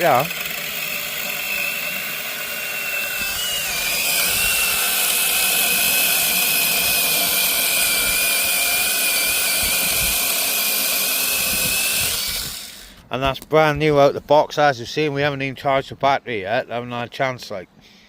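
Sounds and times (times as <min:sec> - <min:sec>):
battery chainsaw cutting wood: 0:00.0 - 0:13.0.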